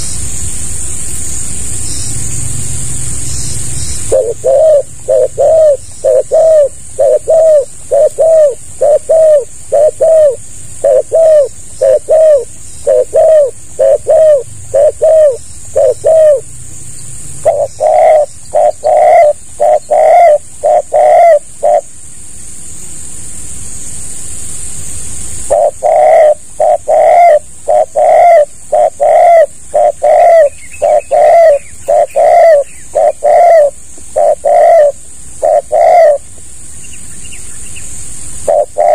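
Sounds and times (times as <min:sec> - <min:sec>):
steady high hiss: 0:00.0 - 0:38.9
dove cooing: 0:04.0 - 0:16.5, 0:17.4 - 0:22.0, 0:25.4 - 0:36.3, 0:38.4 - 0:38.9.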